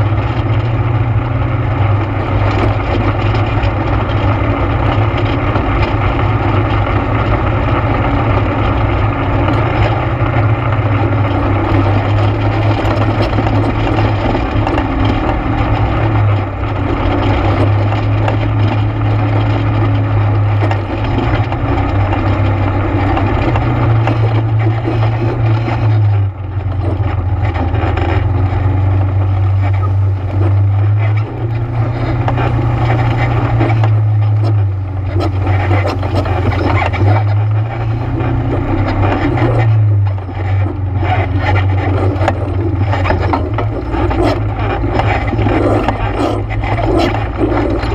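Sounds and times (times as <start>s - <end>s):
atv engine running: 0.0s - 47.9s.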